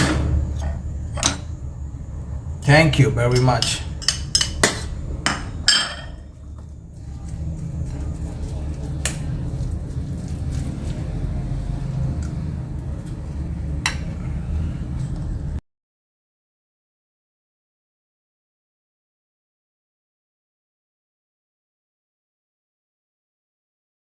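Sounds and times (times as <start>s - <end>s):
steady low hum: 0.0s - 15.6s
kitchenware clinking: 3.3s - 6.3s.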